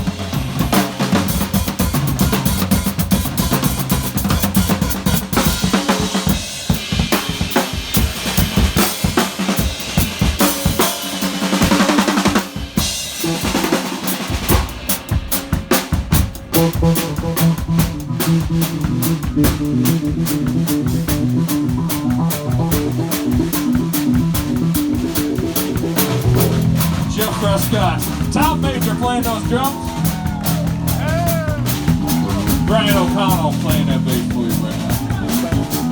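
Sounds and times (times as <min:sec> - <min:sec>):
drum kits playing: 0:00.0 - 0:35.9
electric bass line: 0:16.6 - 0:35.9.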